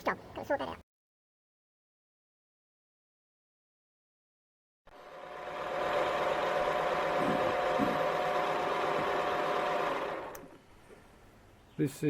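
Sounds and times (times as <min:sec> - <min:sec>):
electric motor humming and whining: 0:04.9 - 0:10.6.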